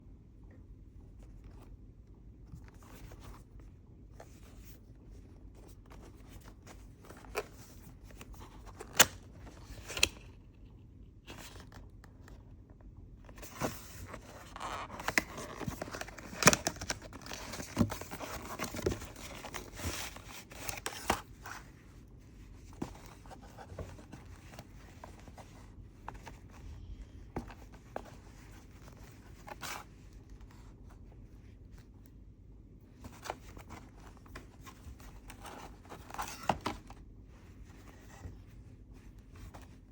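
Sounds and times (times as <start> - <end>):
packaging rustling and tearing: 13.7 - 21.3
packaging clicks and snaps: 14.9 - 19.4.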